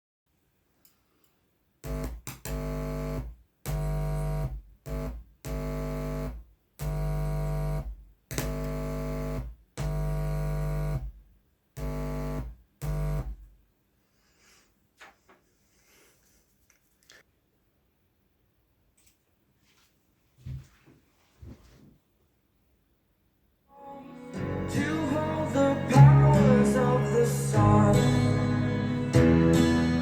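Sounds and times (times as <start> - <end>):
bass-heavy synthesizer chords: 1.8 - 11.1, 11.8 - 13.4, 24.4 - 30.0.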